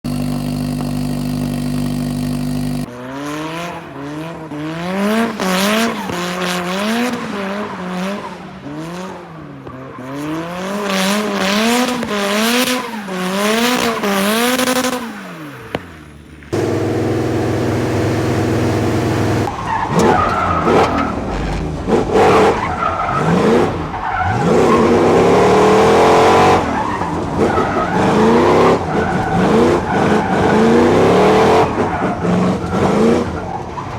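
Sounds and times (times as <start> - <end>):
engine idling: 0.0 - 2.9, 16.6 - 22.2
car engine revving: 0.0 - 33.9.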